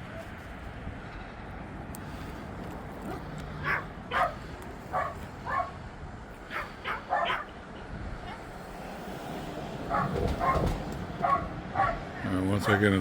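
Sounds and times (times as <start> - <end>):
dog barking: 3.1 - 5.8, 6.5 - 7.6, 9.9 - 12.8.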